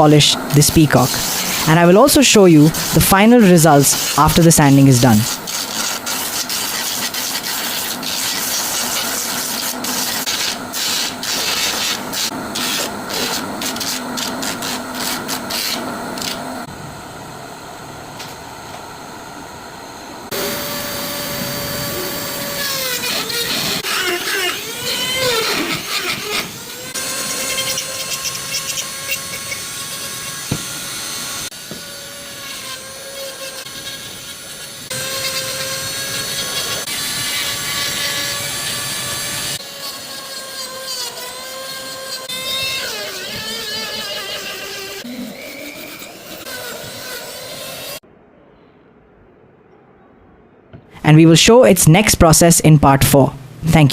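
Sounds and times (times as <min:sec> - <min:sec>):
power sander on wood: 0:00.0 - 0:16.7, 0:20.3 - 0:48.0.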